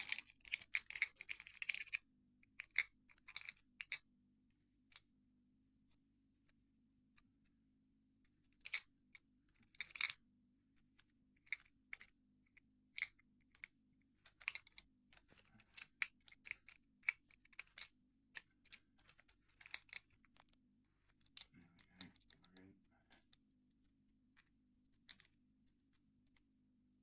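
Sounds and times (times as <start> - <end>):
lock picks clicking and tapping: 0.0 - 2.0.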